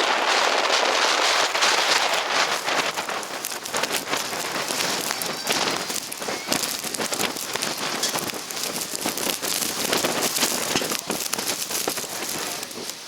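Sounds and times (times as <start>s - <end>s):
blizzard wind: 0.0s - 13.0s
snow pattering on microphone: 0.0s - 13.0s.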